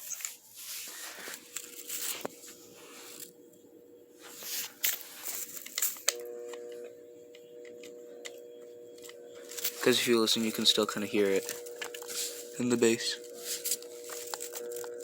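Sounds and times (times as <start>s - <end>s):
rustling of branches: 0.0s - 3.3s
electrical hum from speaker: 0.0s - 15.0s
scattered clicks: 4.8s - 15.0s.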